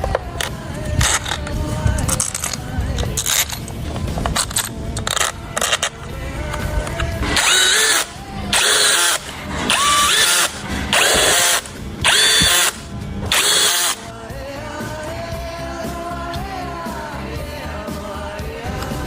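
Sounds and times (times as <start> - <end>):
power drill whining: 0.0 - 14.1.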